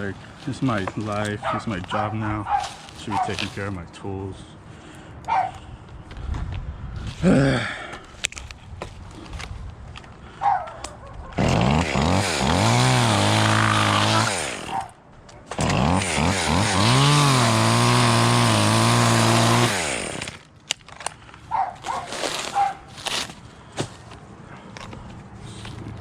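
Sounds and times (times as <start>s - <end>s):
chainsaw revving: 11.4s - 14.9s, 15.5s - 20.4s.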